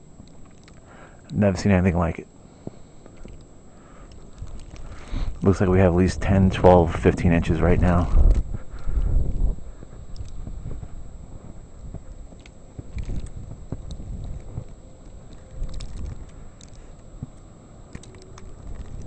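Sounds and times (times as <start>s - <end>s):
wind buffeting microphone: 3.1s - 19.0s
footsteps crunching through snow: 8.2s - 16.5s.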